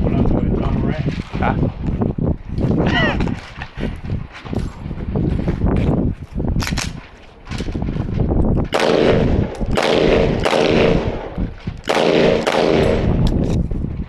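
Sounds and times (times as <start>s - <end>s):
rapid gunfire: 8.7s - 11.3s, 11.9s - 13.2s
gunshots: 8.7s - 13.2s.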